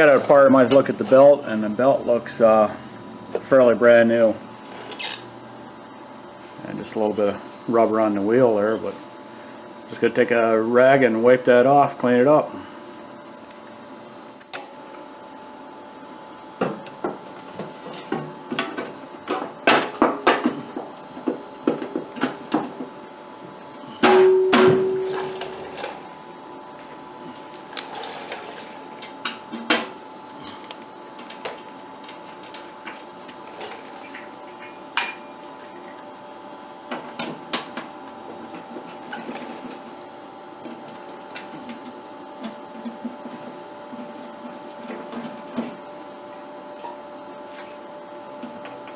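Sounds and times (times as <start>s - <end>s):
steady hum: 0.0s - 48.9s
metallic clang: 24.0s - 25.6s.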